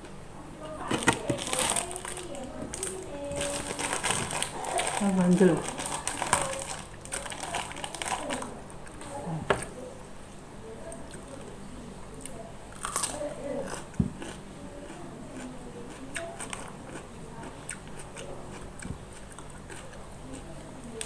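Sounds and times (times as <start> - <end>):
person chewing crunchy food: 12.7 - 20.5.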